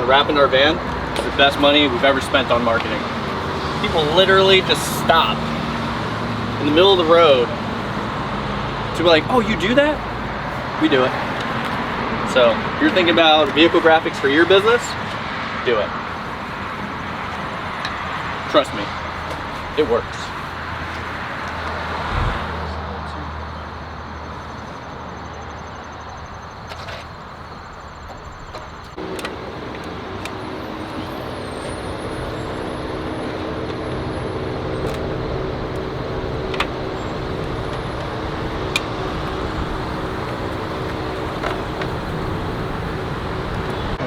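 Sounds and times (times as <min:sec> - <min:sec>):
low engine-like hum: 0:00.0 - 0:15.1, 0:29.0 - 0:44.0
passing road traffic: 0:00.0 - 0:44.0.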